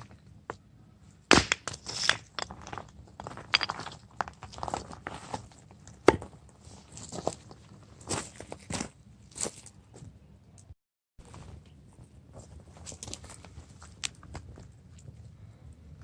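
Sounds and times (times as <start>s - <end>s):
crinkling and rustling: 11.2s - 15.2s.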